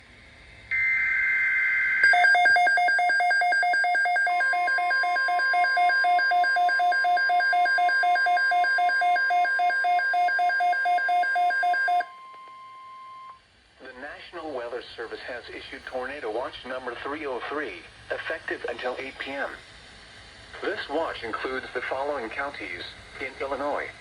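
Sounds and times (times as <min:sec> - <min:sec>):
pulsing electronic alarm beeps: 0:00.7 - 0:13.4
steady warning alarm tone: 0:00.7 - 0:13.4.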